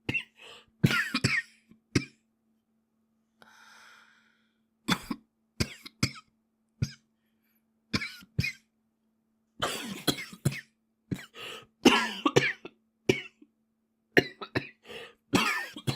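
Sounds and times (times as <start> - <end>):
boy coughing: 0.0 - 2.1, 9.6 - 13.4, 15.4 - 15.9
faint steady hum: 0.0 - 15.9.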